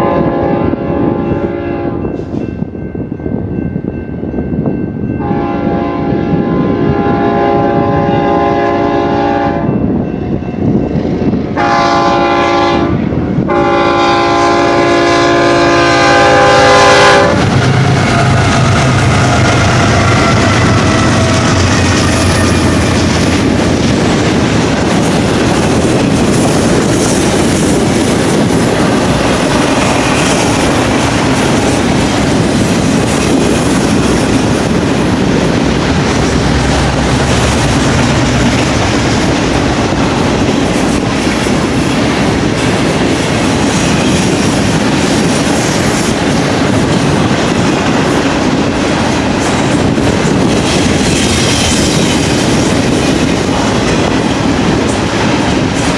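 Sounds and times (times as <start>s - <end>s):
train cars rolling past: 12.9s - 55.9s.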